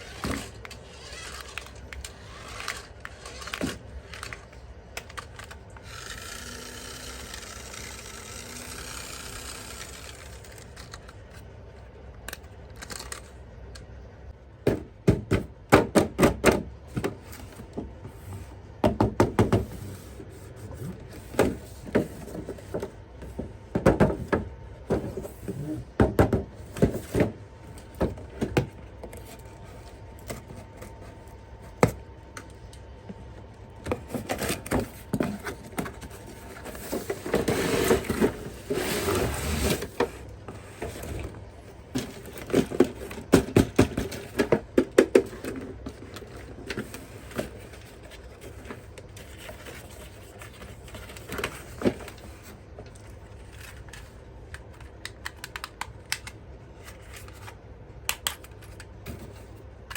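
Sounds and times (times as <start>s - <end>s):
packaging scraping and rustling: 33.8s - 54.9s.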